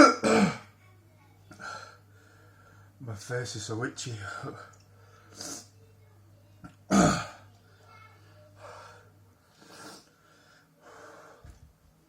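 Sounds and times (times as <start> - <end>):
man breathing hard: 8.6 - 11.6.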